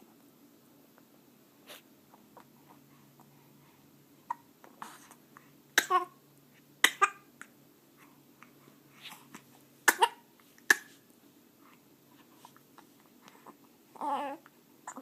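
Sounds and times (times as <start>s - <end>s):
baby hiccuping: 5.8s - 6.2s, 6.8s - 7.3s, 9.8s - 11.0s.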